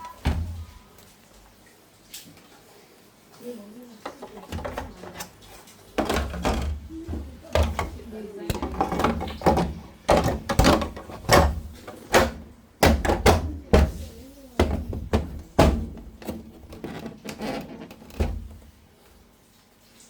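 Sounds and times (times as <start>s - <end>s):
hard knocks and thunks: 0.2s - 0.8s, 6.0s - 16.6s.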